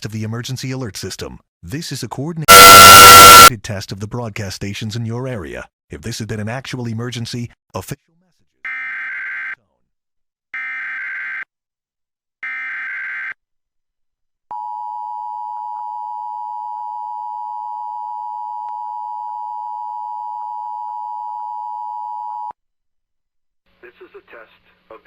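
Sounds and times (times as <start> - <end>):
screeching digital data bursts: 2.5 - 3.5
two-tone attention signal: 2.5 - 3.5.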